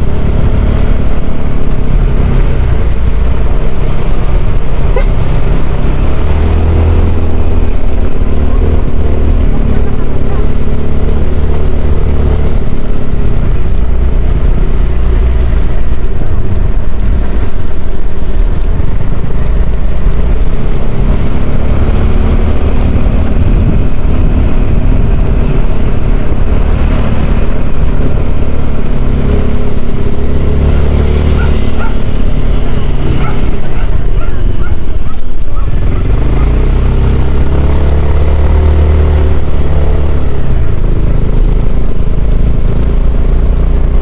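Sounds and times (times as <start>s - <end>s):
motorcycle engine running: 0.0s - 44.0s
wind on microphone: 12.6s - 37.6s.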